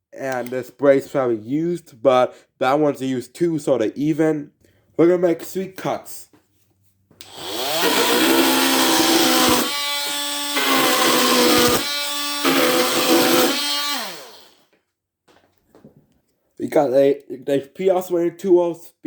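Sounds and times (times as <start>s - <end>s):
oscillating multi-tool cutting wood: 7.2s - 14.7s.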